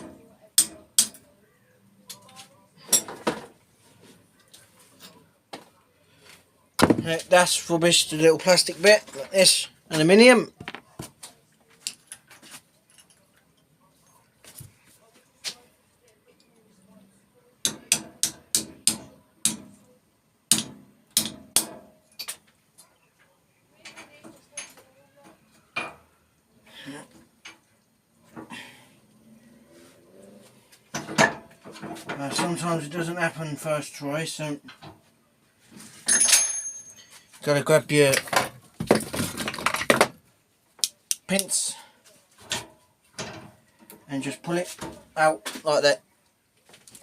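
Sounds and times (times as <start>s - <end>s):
metallic knocks and clinks: 36.0s - 37.4s.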